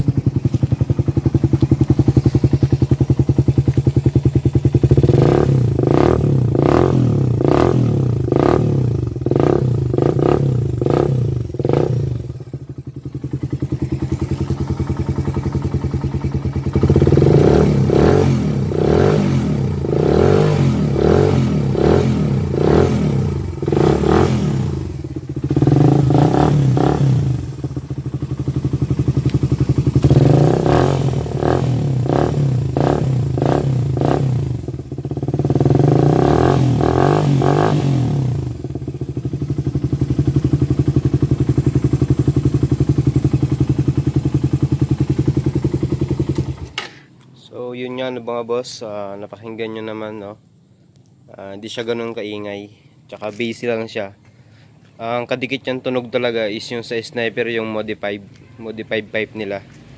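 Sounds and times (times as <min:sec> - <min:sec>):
motorcycle engine revving: 0:00.0 - 0:47.1.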